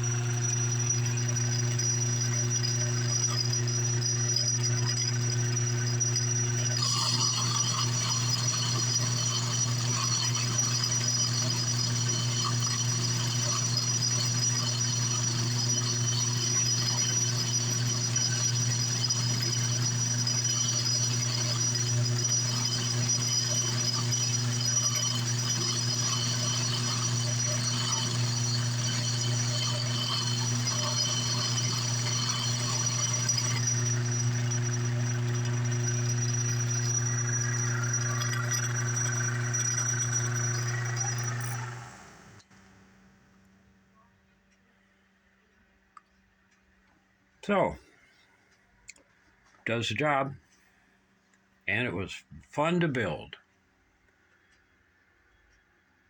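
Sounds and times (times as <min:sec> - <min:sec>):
lathe motor hum with whine: 0:00.0 - 0:42.5.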